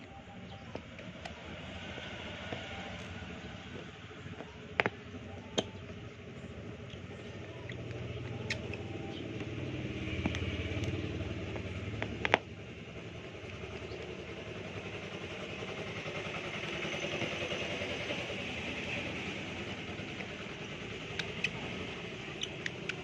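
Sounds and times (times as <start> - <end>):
low engine hum: 0.0 - 23.0
sharp clicks: 6.7 - 12.6, 20.1 - 23.0.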